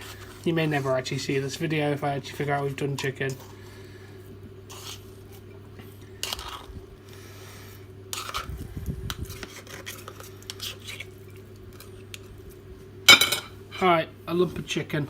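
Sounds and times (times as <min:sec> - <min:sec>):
knife and fork scraping a dish: 0:04.7 - 0:05.5, 0:06.2 - 0:06.7, 0:08.1 - 0:08.5, 0:09.2 - 0:12.1.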